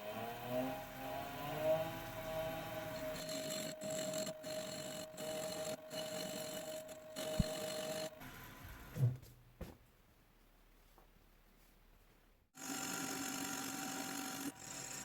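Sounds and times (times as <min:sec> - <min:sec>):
machine tool whining: 0:00.0 - 0:09.0.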